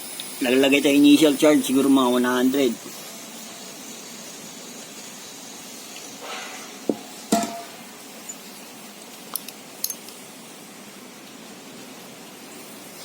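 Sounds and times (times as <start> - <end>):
steady low hiss: 0.0 - 13.0
sharp metallic clink: 7.3 - 7.8.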